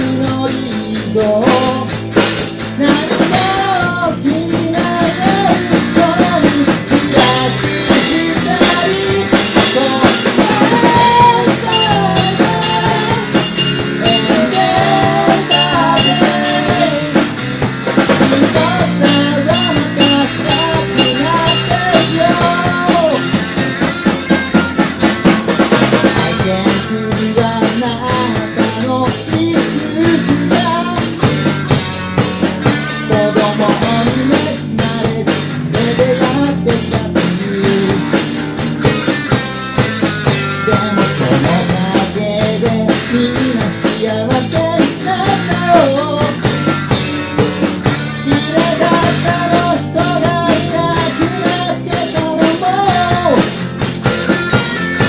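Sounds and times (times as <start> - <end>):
drum kit beat: 0.0 - 55.0
rock band playing: 0.0 - 55.0
wavering melody line: 11.0 - 17.1.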